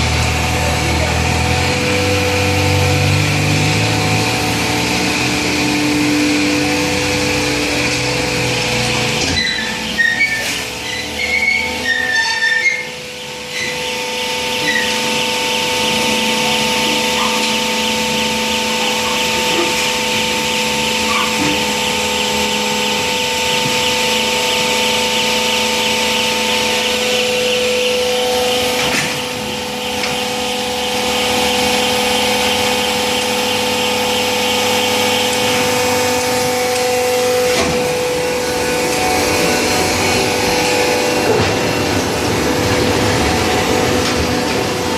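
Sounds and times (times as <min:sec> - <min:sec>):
hydraulic pump motor humming: 0:00.0 - 0:44.9
short squeaks: 0:09.3 - 0:13.8.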